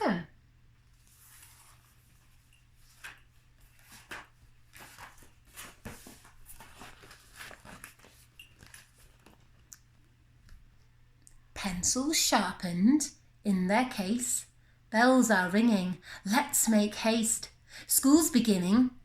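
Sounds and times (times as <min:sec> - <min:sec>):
low steady hum: 0:00.0 - 0:19.0
book pages turning: 0:00.9 - 0:09.9.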